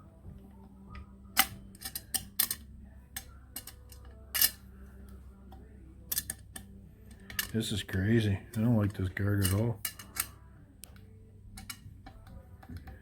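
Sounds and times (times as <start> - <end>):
grinder guard clicking against metal: 1.4 - 2.6, 3.2 - 4.6, 6.1 - 7.7, 8.5 - 13.0.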